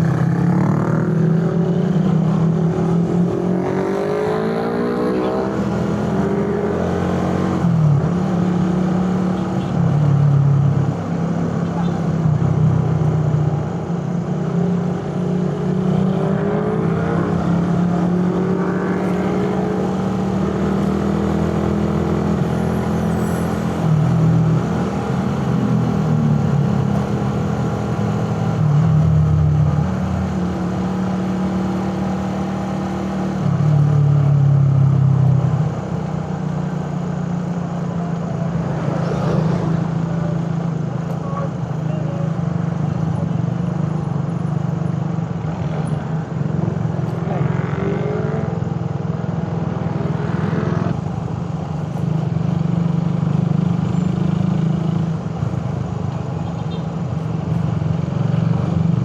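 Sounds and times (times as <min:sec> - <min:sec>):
motorcycle engine revving: 0:00.0 - 0:09.2, 0:46.4 - 0:51.2.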